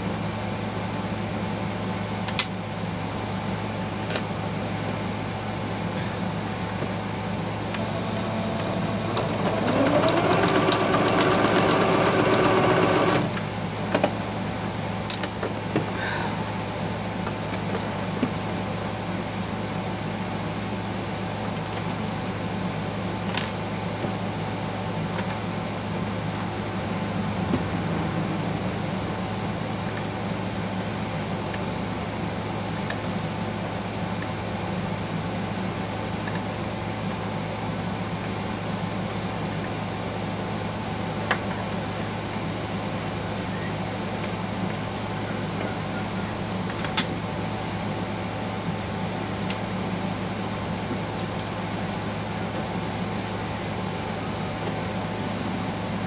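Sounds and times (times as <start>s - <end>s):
fan-like hum: 0.0s - 56.0s
sewing machine running: 7.7s - 13.4s.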